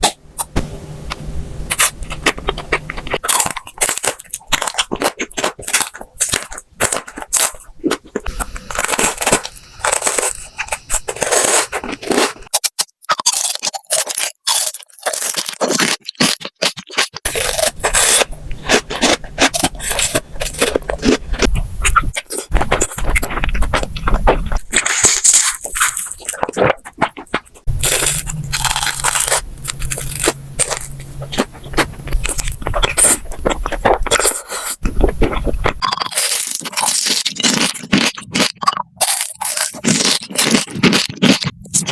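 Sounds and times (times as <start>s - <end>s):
food crunching and chewing: 1.7s - 41.9s.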